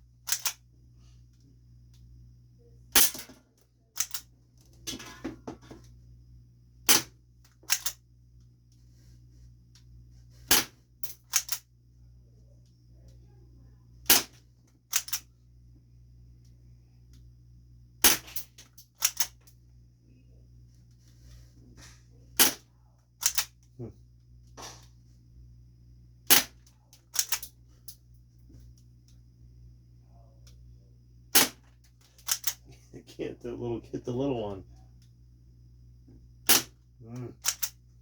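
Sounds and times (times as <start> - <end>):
low steady hum: 0.0 - 38.0
airsoft pistol snapping: 10.5 - 11.6, 14.9 - 15.2, 26.3 - 27.5, 31.4 - 31.6, 36.5 - 36.7, 37.4 - 37.7.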